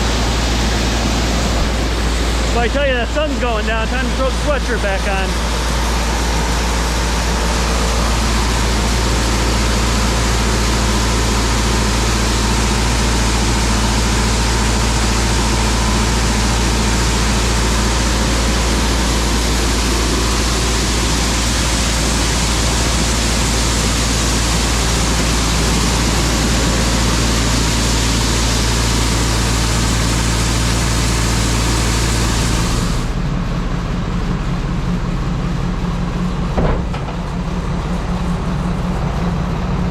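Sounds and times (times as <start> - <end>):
farm machine engine running: 0.0 - 39.9
loud rushing hiss: 12.5 - 33.2.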